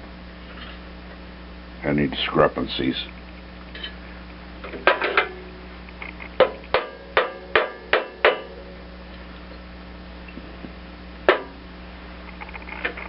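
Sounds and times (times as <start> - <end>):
rattle of clicks: 4.6 - 6.9, 12.2 - 13.0.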